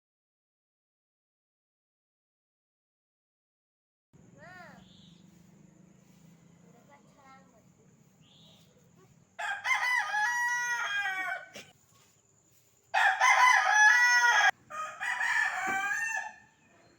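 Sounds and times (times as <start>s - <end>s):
roosters crowing: 9.4s - 11.7s, 12.9s - 16.7s.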